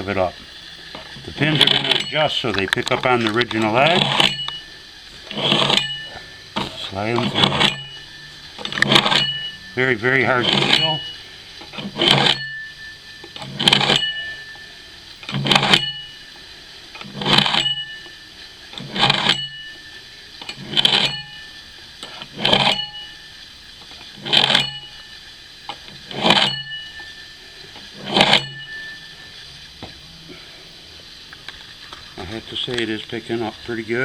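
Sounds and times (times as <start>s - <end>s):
axe edge scraping sharpener: 0.9s - 14.6s, 15.2s - 16.1s, 16.9s - 19.8s, 20.4s - 23.2s, 23.8s - 29.0s
axe head ringing: 1.0s - 30.0s.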